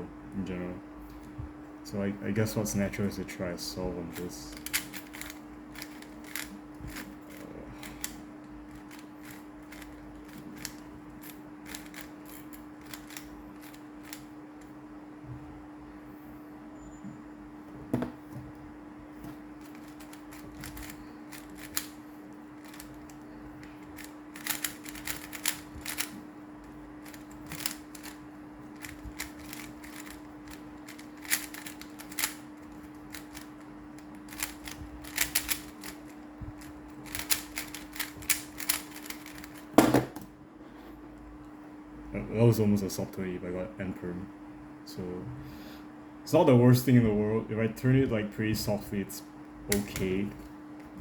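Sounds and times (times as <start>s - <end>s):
steady low hum: 0.0s - 51.0s
rapid plastic clicking of puzzle cube: 4.1s - 14.2s, 19.6s - 22.0s, 22.6s - 28.2s, 28.8s - 39.7s.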